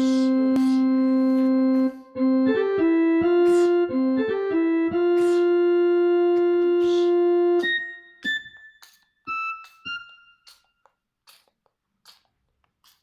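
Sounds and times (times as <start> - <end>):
electric piano ringtone melody: 0.0 - 8.0.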